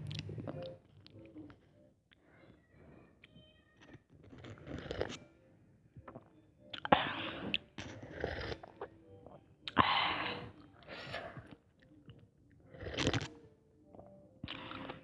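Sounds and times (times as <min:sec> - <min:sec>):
chewing noodles: 0:03.2 - 0:05.2, 0:10.4 - 0:15.0.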